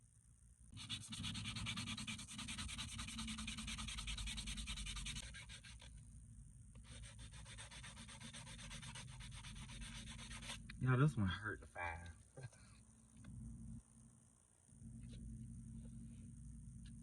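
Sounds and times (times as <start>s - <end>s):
nail file rasping: 0.8s - 5.8s, 6.9s - 10.6s.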